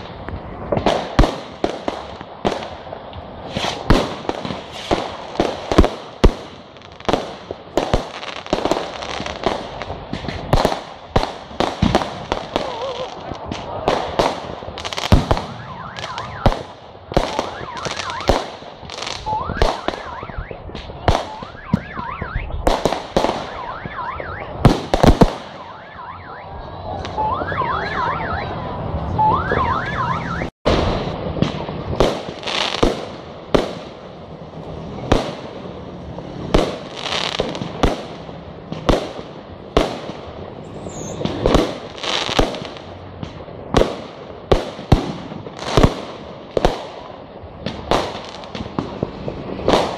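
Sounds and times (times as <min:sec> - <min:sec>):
whistling firework shells: 0:15.3 - 0:18.4, 0:19.1 - 0:26.0, 0:40.6 - 0:41.4.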